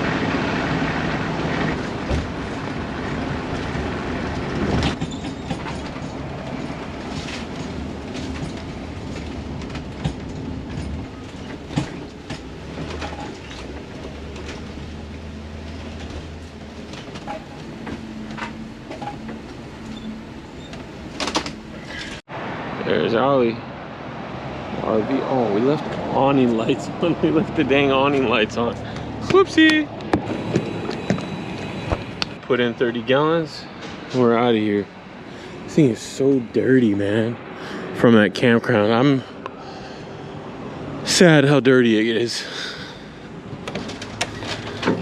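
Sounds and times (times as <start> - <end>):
engine and road drone: 0.0 - 45.0.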